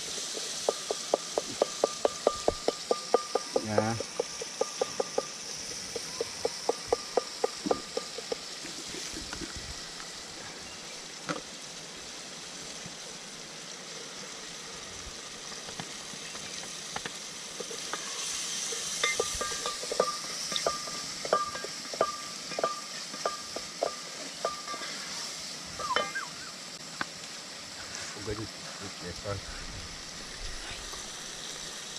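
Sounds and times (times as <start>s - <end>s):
food sizzling in a pot: 0.0s - 31.9s
spoon clinking against pot: 19.0s - 24.9s, 25.8s - 26.2s.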